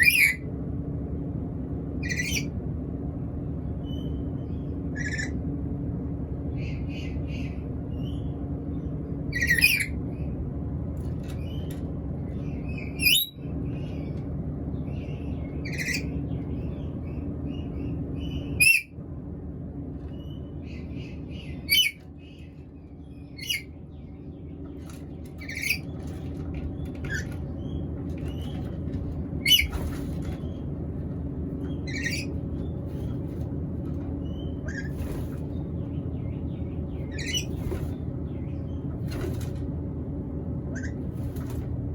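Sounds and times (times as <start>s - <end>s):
parrot squawking and chirping: 0.0s - 0.5s, 2.0s - 2.5s, 4.9s - 5.4s, 9.3s - 10.0s, 12.4s - 13.4s, 15.1s - 16.2s, 17.8s - 19.0s, 20.2s - 22.4s, 23.2s - 23.8s, 25.3s - 26.0s, 29.4s - 30.6s, 31.7s - 33.1s, 34.2s - 35.4s, 37.0s - 37.6s, 40.7s - 41.1s
steady low hum: 0.0s - 41.9s.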